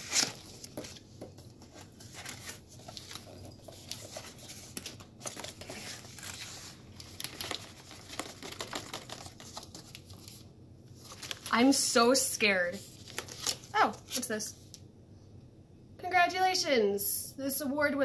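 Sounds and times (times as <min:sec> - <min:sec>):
packing tape and cardboard tearing: 0:00.0 - 0:00.9
packaging crinkling: 0:00.0 - 0:11.6.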